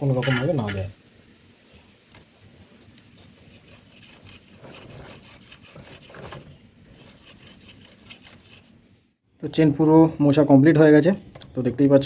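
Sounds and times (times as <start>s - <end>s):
cloth rubbing on drive chain: 1.9s - 9.0s.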